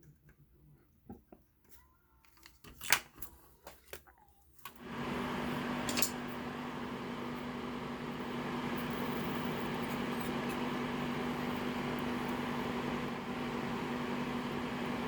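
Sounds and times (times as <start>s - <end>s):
small fan hissing and humming: 4.7s - 15.0s.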